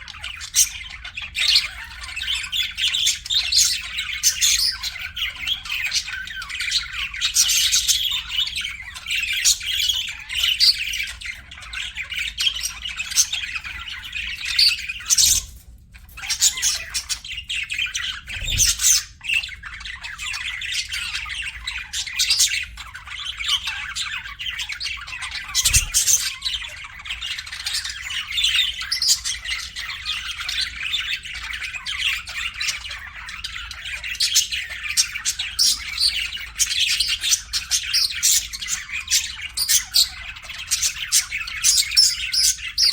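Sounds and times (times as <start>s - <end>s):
budgies chattering and squawking: 0.0s - 42.9s.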